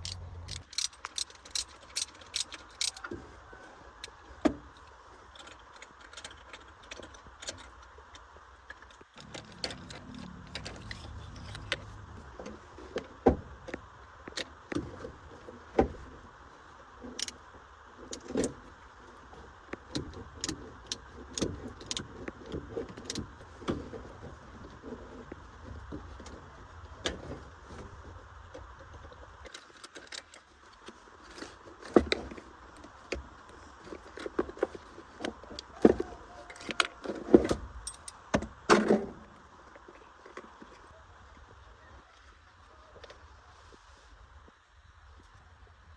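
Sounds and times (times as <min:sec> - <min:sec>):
metal tools clinking: 0:00.0 - 0:03.1, 0:09.1 - 0:12.3, 0:35.8 - 0:38.2
low steady hum: 0:00.0 - 0:45.9.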